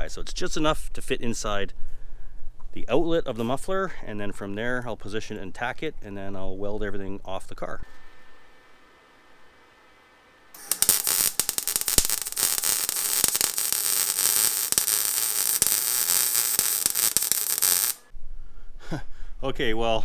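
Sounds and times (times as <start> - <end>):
welder crackling: 7.9 - 18.1.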